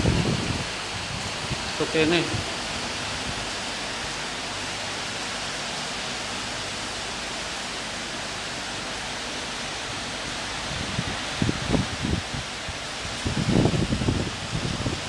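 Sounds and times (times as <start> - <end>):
wind gusting on microphone: 0.0 - 4.2, 9.9 - 15.0
heavy rain pouring: 0.0 - 15.0.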